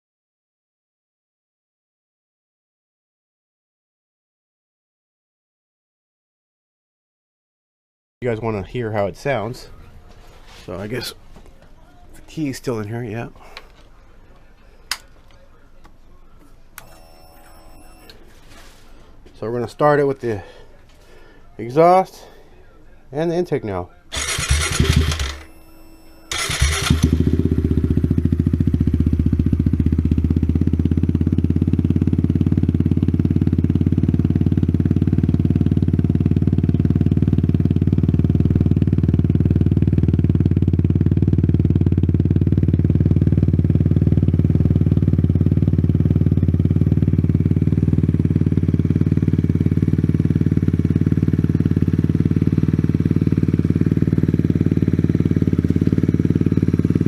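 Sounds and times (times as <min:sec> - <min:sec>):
motorcycle engine starting and idling: 0:24.1 - 0:57.0.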